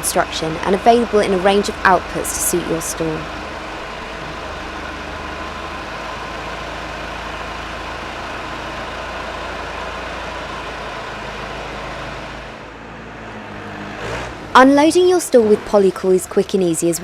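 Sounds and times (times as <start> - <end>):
ventilation fan running: 0.0 - 12.8.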